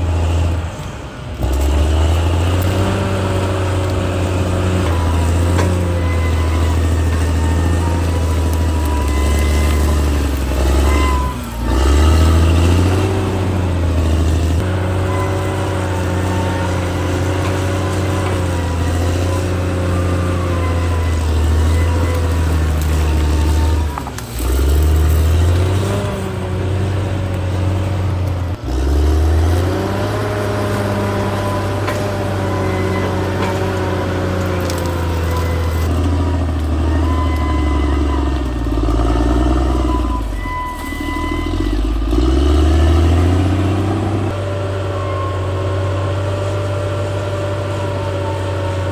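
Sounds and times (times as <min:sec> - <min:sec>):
bulldozer diesel engine running: 0:00.0 - 0:48.9.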